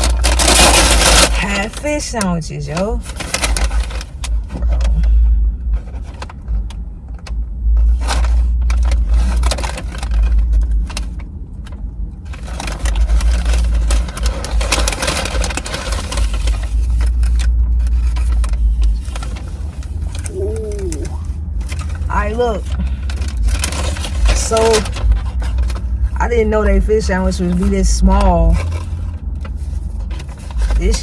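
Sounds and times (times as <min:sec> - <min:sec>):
paper wrappers rustling: 0:00.0 - 0:04.9, 0:07.7 - 0:31.0
steady low rumble: 0:00.0 - 0:31.0.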